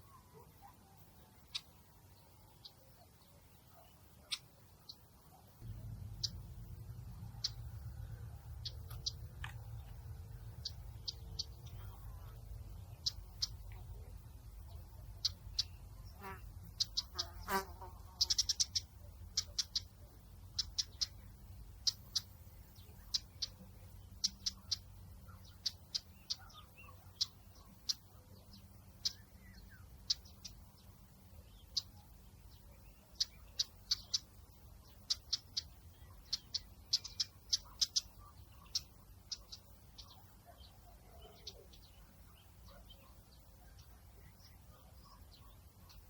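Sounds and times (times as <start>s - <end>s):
small birds chirping: 0.0s - 46.0s
faint low rumble: 5.5s - 17.1s.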